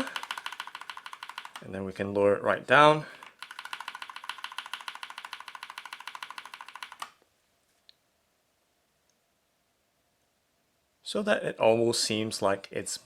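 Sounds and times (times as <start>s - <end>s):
mechanical keyboard clicking: 0.0s - 1.7s, 3.2s - 7.2s.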